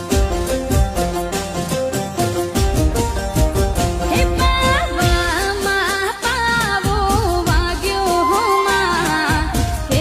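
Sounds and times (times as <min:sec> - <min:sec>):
folk music melody: 0:00.0 - 0:07.6
steady drum beat: 0:00.0 - 0:10.0.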